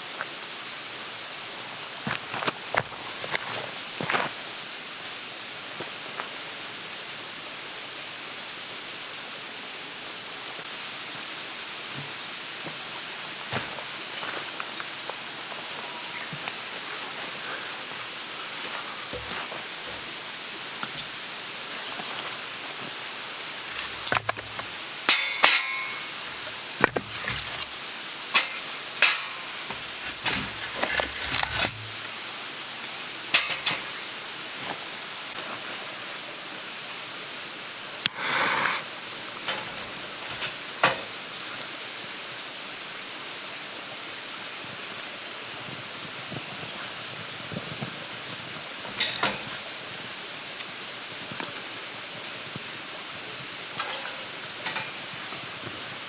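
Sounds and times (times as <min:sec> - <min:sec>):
steady hiss: 0:00.0 - 0:56.0
sharp knocks and clinks: 0:25.1 - 0:26.4, 0:28.4 - 0:30.6
short scrape: 0:38.0 - 0:38.9.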